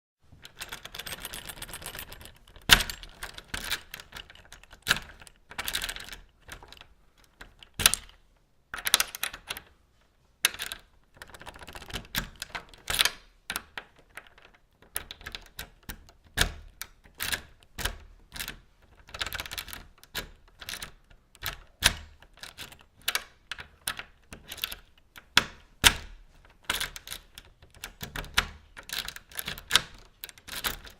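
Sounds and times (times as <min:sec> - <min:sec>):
key scraping into door lock: 0:00.4 - 0:08.2
lock clicking: 0:00.4 - 0:08.2.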